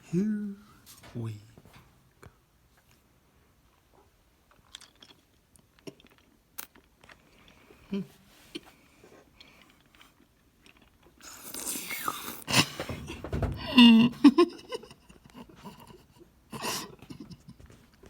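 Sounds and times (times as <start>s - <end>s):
mouth clicks and sucking: 11.2s - 12.5s.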